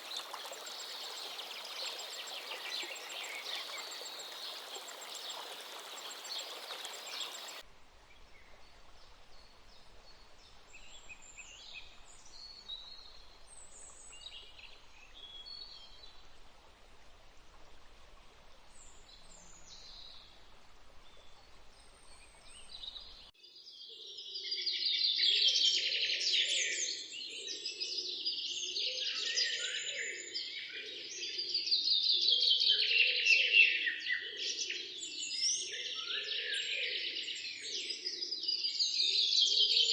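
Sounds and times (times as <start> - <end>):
birds chirping: 0.0 - 7.6.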